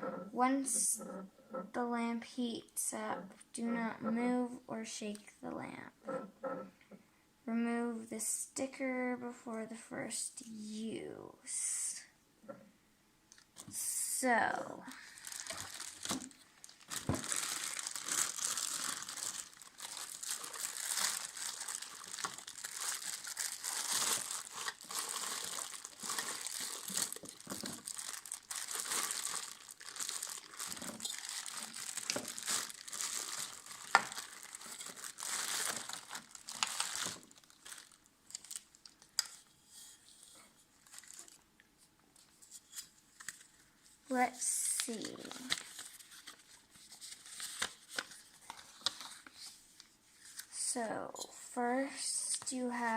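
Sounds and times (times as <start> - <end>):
packaging crinkling: 14.9 - 39.5, 40.8 - 41.4, 44.9 - 50.5.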